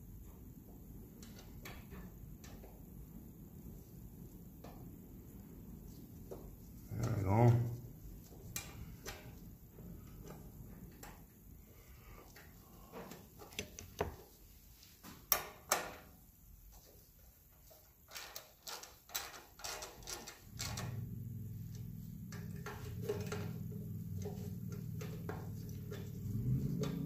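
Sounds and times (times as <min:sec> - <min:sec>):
steady low hum: 0:20.4 - 0:27.0.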